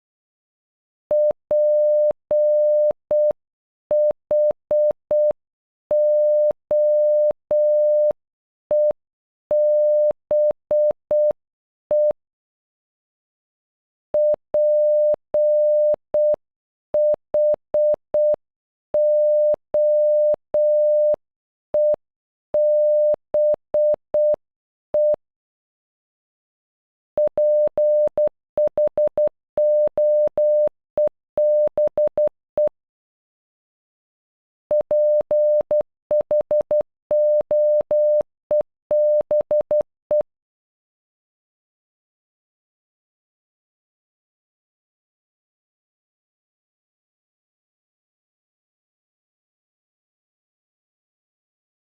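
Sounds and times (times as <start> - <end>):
morse code beeps: 1.1 - 12.2, 14.2 - 16.4, 19.0 - 21.2, 22.6 - 24.4, 27.2 - 32.7, 34.7 - 40.2.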